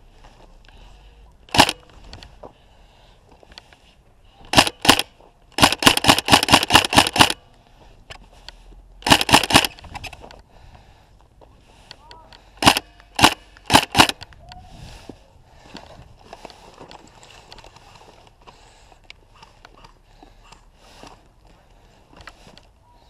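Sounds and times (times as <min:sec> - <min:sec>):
airsoft gun firing shots: 0:01.5 - 0:01.8, 0:04.5 - 0:07.4, 0:09.0 - 0:09.8, 0:12.6 - 0:14.2.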